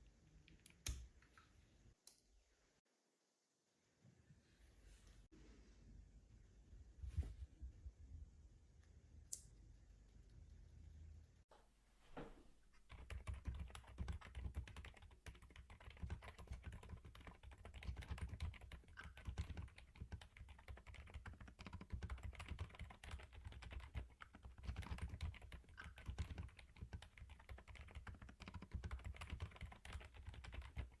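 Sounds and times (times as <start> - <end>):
quiet keyboard typing: 12.8 - 31.0.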